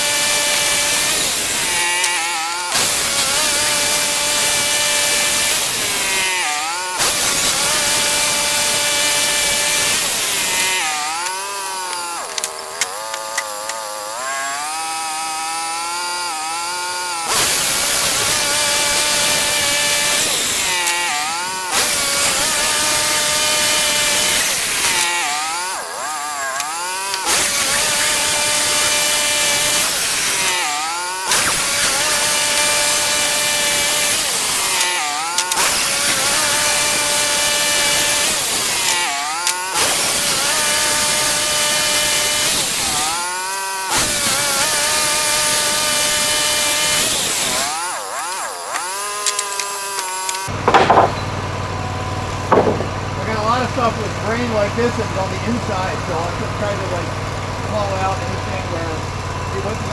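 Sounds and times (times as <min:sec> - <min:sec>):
sawmill engine running: 0:00.0 - 0:59.9
saw blade hissing through log: 0:26.4 - 0:43.2.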